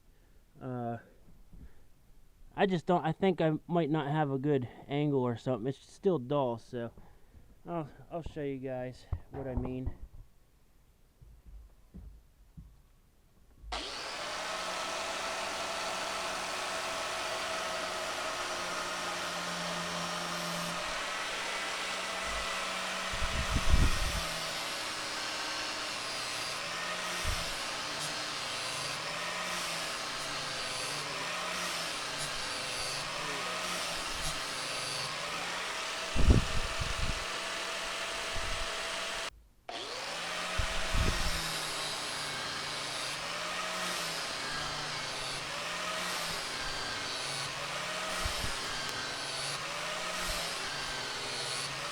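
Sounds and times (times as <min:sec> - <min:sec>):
angle grinder sharpening blade: 0:23.5 - 0:36.2.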